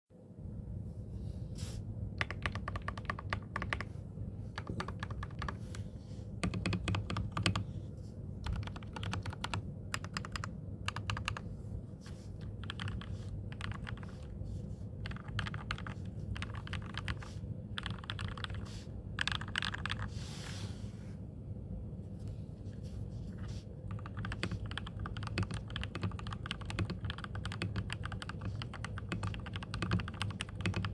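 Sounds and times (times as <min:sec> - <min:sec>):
mechanical keyboard typing: 0:02.2 - 0:03.9, 0:04.5 - 0:05.8, 0:06.4 - 0:07.7, 0:08.4 - 0:11.4, 0:12.4 - 0:14.3, 0:15.0 - 0:20.1, 0:23.9 - 0:30.9.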